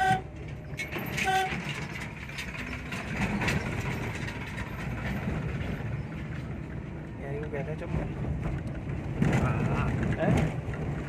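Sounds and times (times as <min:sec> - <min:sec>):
vehicle horn toot: 0:00.0 - 0:00.3, 0:01.2 - 0:01.6
vehicle running and road noise: 0:00.0 - 0:11.0.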